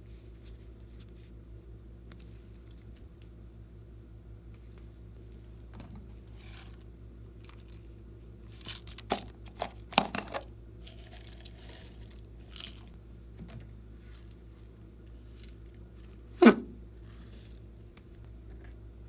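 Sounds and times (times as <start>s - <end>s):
soft crinkly rustles: 0.0s - 3.4s, 4.6s - 9.1s, 13.7s - 16.2s
steady low hum: 0.0s - 19.0s.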